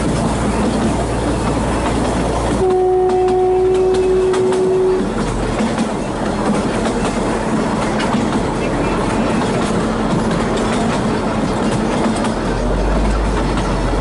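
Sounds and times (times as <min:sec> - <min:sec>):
train wheels clicking over rail joints: 0:00.0 - 0:14.0
diesel locomotive horn: 0:02.5 - 0:05.2.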